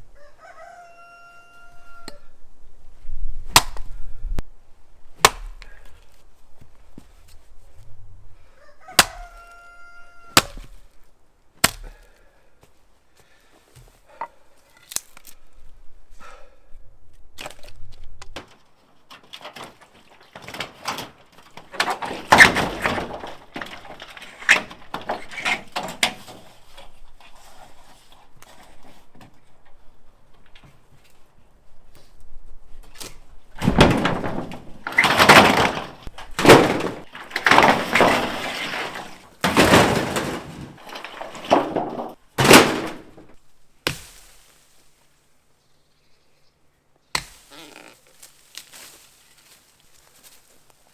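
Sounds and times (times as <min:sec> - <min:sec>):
wood and branches cracking: 0:03.3 - 0:07.9, 0:08.9 - 0:15.8, 0:17.0 - 0:45.1, 0:47.1 - 0:50.9
axe thunks into wood: 0:03.5 - 0:04.0, 0:05.2 - 0:05.8, 0:09.0 - 0:09.4, 0:10.4 - 0:10.8, 0:11.6 - 0:12.1, 0:21.7 - 0:26.3, 0:32.9 - 0:44.3, 0:47.1 - 0:47.5.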